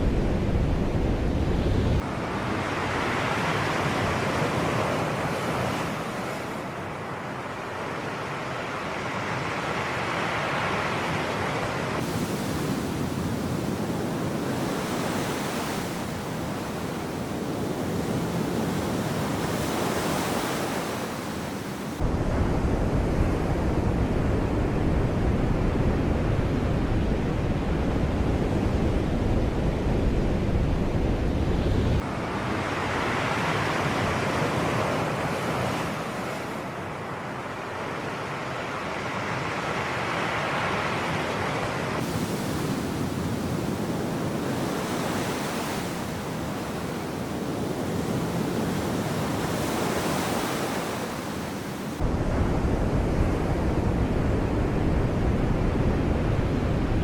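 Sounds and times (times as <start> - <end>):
low wind rumble on microphone: 0.0 - 6.7, 10.6 - 37.3, 41.1 - 57.0
sea waves washing: 9.8 - 22.1, 32.0 - 54.8.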